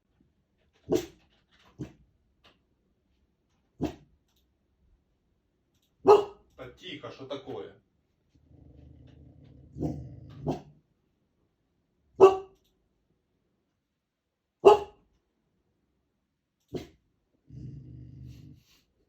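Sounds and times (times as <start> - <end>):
dog barking: 0.9 - 1.2, 6.0 - 6.5, 9.8 - 10.8, 12.2 - 12.6, 14.6 - 15.0
puppy growling: 8.3 - 10.8, 16.7 - 18.8.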